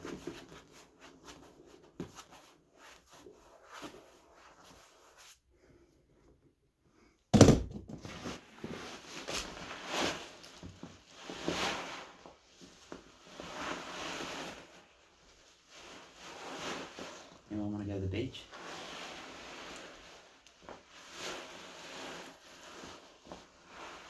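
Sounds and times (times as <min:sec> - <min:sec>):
sharp thump: 0:07.4 - 0:07.9.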